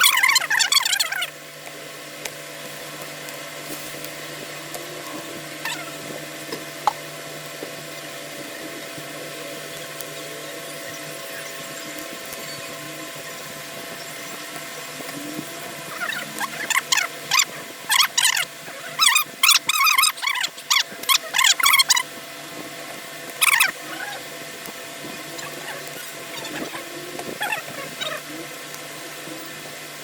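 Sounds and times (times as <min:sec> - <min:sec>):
small electric machine humming: 0:00.0 - 0:30.0.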